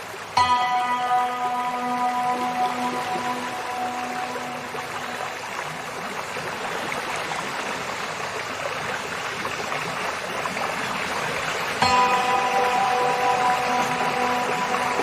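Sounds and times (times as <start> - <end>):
river water rushing: 0.0 - 15.0
held music note: 0.4 - 5.8, 11.8 - 15.0.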